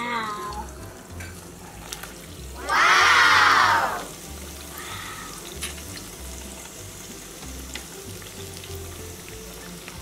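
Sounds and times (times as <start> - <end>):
food deep-frying in hot oil: 0.0 - 10.0.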